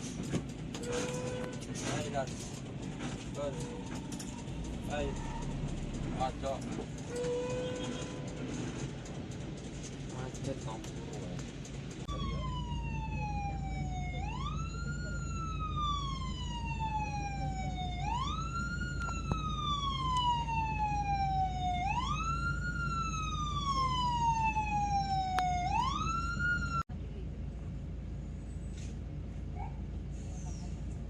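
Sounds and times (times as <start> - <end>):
low rumble of engines: 0.0 - 31.0
vehicle siren wailing: 0.8 - 1.7, 3.3 - 8.8, 12.1 - 26.9.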